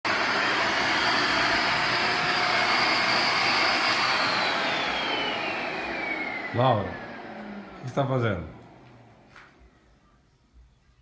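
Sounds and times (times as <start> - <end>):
vacuum cleaner running: 0.0 - 9.8.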